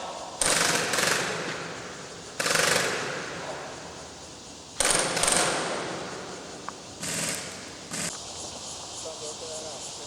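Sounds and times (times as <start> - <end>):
airsoft gun bursts: 0.4 - 1.8, 2.4 - 3.4, 4.8 - 6.1, 7.0 - 8.1.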